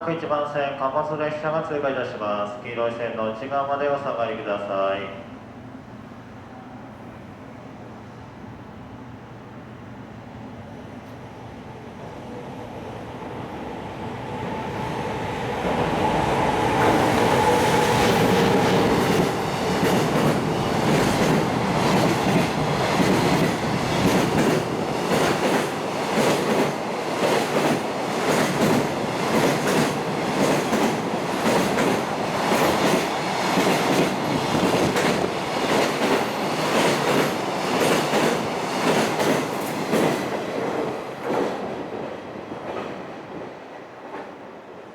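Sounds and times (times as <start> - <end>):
locomotive rushing and whining: 14.2 - 26.6.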